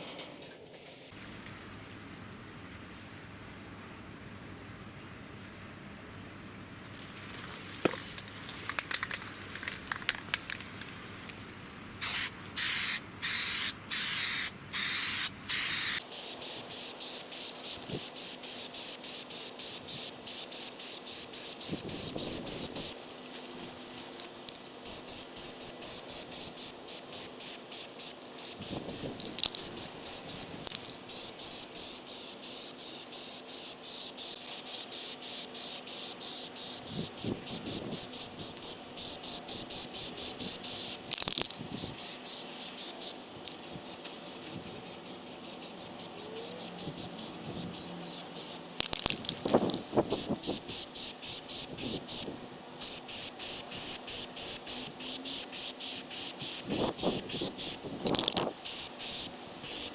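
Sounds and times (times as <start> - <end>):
aerosol spray can hissing: 12.0 - 23.0, 24.9 - 41.0, 41.8 - 59.9.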